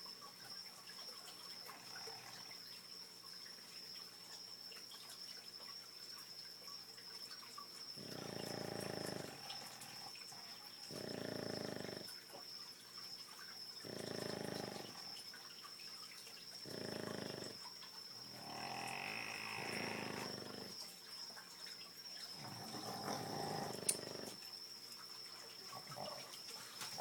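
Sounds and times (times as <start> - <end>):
dogs snoring: 1.6 - 2.6, 7.9 - 12.3, 13.7 - 15.3, 16.6 - 20.9, 22.3 - 24.5, 25.7 - 27.0.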